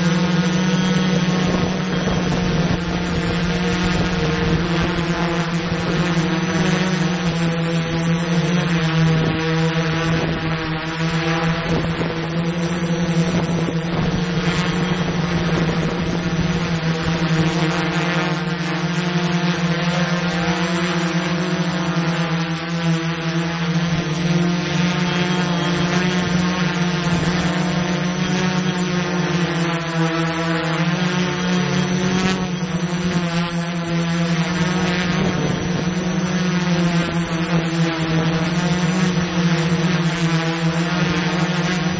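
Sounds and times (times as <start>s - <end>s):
drone propellers humming: 0.0s - 41.9s.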